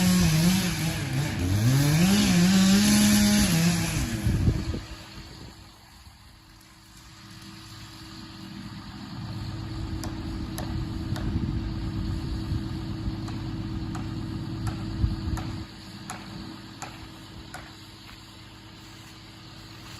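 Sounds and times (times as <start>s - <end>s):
engine idling: 4.2s - 19.9s.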